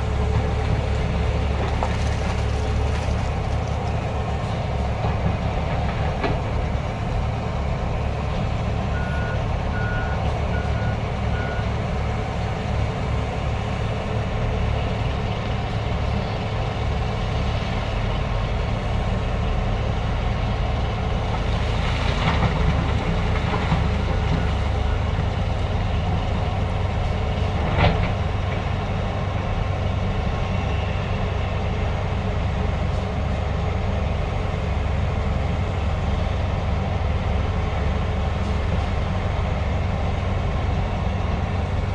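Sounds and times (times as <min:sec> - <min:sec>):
heavy diesel machinery running: 0:00.0 - 0:41.9
reversing beeps: 0:08.9 - 0:11.8.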